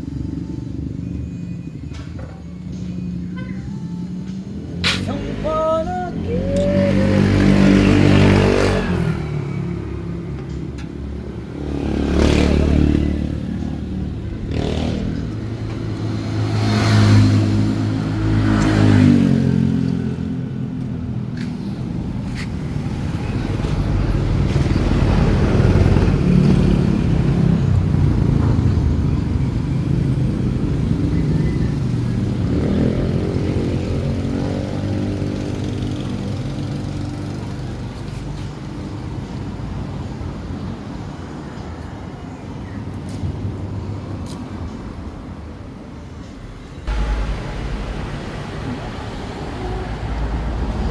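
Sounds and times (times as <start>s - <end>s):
motorcycle engine revving and idling: 4.2s - 39.0s, 46.9s - 50.9s.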